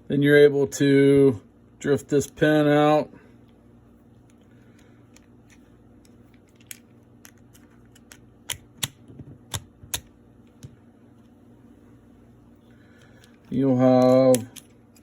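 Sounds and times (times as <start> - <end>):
sharp metal clicks and taps: 8.0 - 10.8.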